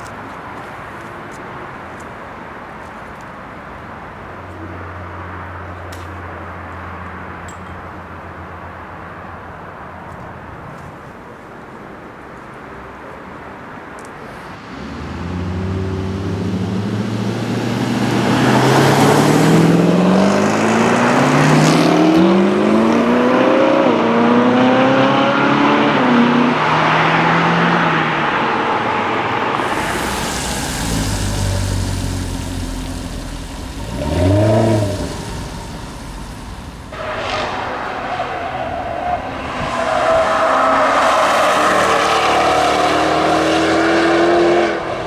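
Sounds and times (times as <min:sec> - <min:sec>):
sports car accelerating: 0:14.4 - 0:45.0
engine revving: 0:14.6 - 0:27.7, 0:29.5 - 0:45.0.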